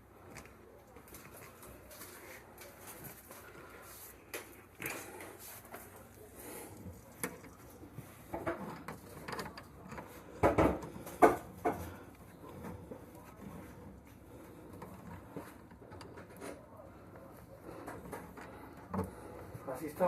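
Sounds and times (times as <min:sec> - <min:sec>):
knocks and clunks of objects: 0:07.1 - 0:16.9, 0:17.7 - 0:19.6.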